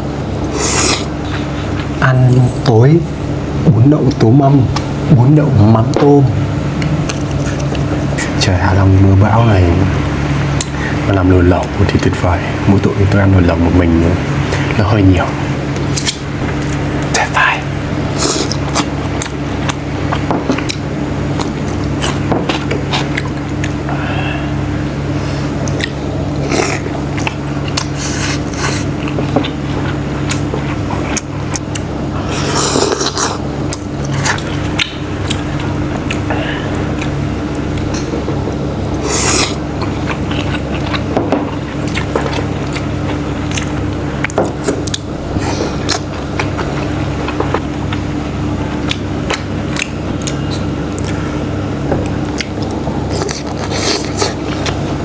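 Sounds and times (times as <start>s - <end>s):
steady low hum: 0.0s - 55.0s
person chewing food: 6.7s - 8.4s, 15.7s - 55.0s.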